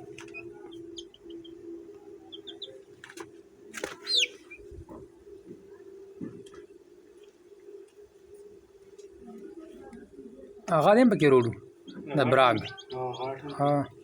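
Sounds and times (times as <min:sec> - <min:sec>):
chicks peeping: 0:00.0 - 0:05.0, 0:11.2 - 0:14.0
steady low hum: 0:00.0 - 0:14.0.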